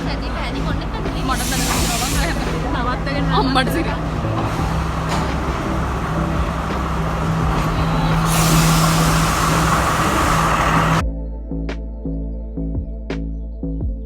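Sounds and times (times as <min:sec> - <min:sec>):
bus engine droning: 0:00.0 - 0:11.0
loud hiss: 0:01.1 - 0:02.9, 0:03.5 - 0:11.0.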